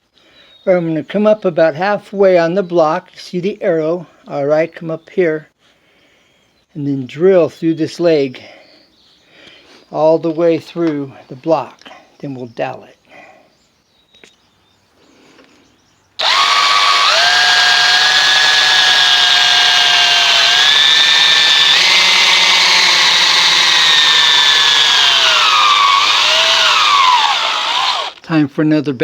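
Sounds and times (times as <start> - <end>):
drill boring into wood: 16.2 - 28.2.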